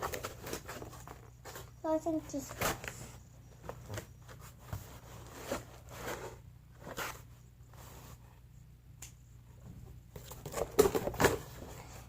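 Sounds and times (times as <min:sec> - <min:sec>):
cardboard rustling and scraping: 0:00.0 - 0:08.3.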